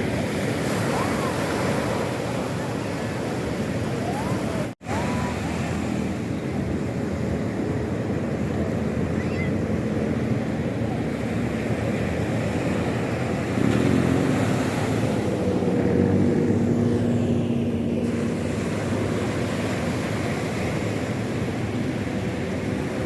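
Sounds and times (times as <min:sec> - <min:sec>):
waves breaking on shore: 0:00.0 - 0:23.0
engine drone: 0:04.9 - 0:23.0.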